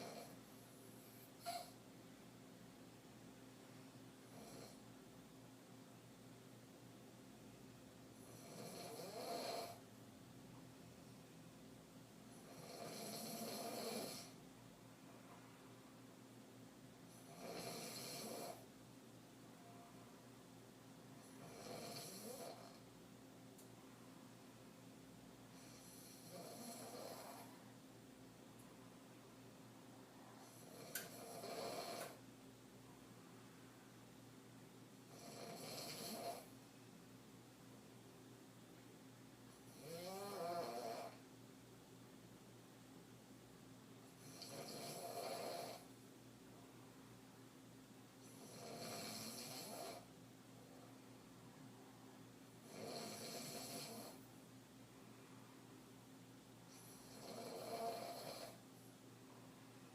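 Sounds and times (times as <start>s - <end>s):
woman snoring: 0.0s - 0.4s, 8.2s - 9.8s, 12.4s - 14.4s, 17.1s - 18.6s, 21.3s - 22.8s, 25.5s - 27.5s, 30.4s - 32.2s, 35.1s - 36.5s, 39.7s - 41.2s, 44.2s - 45.9s, 48.2s - 50.1s, 52.6s - 54.3s, 56.7s - 58.6s
quiet breathing: 0.0s - 1.9s, 25.4s - 27.9s, 29.7s - 33.8s, 56.6s - 59.9s
faint steady hiss: 0.0s - 59.9s.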